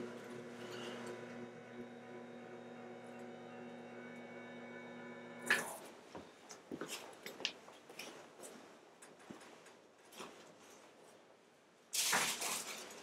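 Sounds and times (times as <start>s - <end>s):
steady electric hum: 0.0s - 6.1s.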